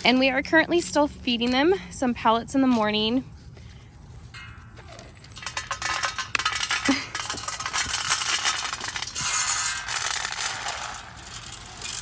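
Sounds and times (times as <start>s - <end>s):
feed pellets pouring into container: 8.1s - 12.0s.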